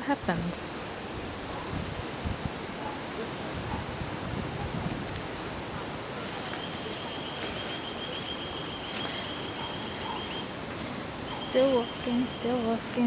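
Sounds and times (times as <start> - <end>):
rain: 0.0 - 13.0
wind: 0.0 - 13.0
high thin animal call: 6.2 - 10.5.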